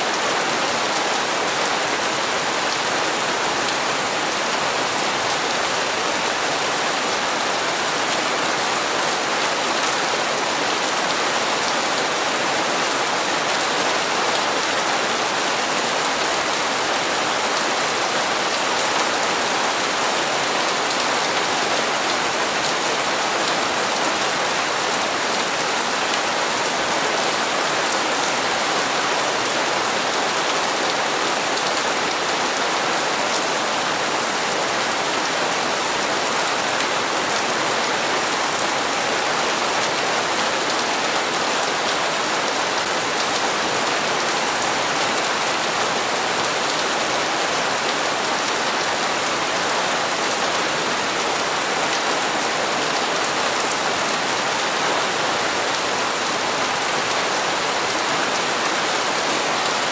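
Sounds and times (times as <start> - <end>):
rain on hard surfaces: 0.0 - 59.9.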